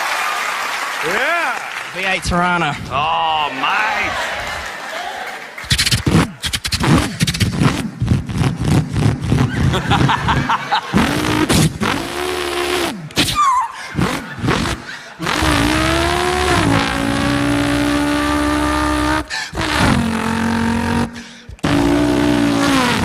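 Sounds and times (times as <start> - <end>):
man imitating car engine: 7.8 - 23.0.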